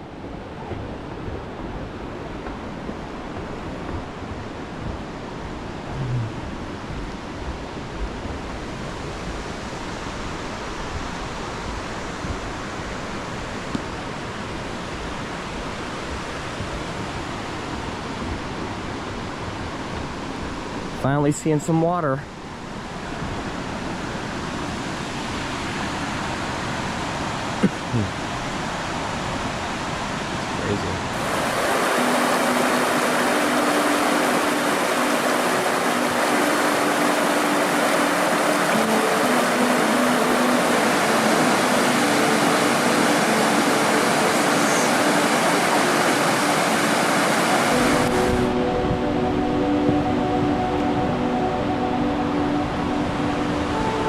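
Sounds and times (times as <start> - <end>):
waterfall roaring: 0.0 - 54.0
waterfall rushing: 30.5 - 54.0
music: 31.8 - 54.0.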